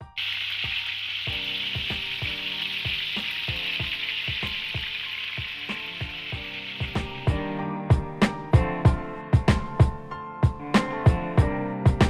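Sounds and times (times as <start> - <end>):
chicken sizzling on hot plate: 0.0 - 7.4
background music: 0.0 - 12.0.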